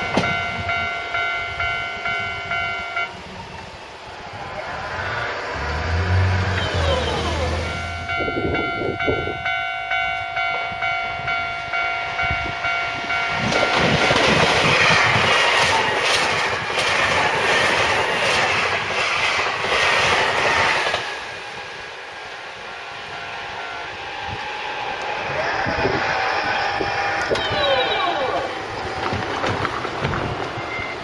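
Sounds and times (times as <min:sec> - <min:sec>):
level-crossing warning bell: 0:00.0 - 0:04.2, 0:06.3 - 0:16.0, 0:22.8 - 0:24.5, 0:25.9 - 0:29.2, 0:30.5 - 0:31.0
train wheels clattering over rail joints: 0:13.4 - 0:21.2, 0:28.6 - 0:31.0.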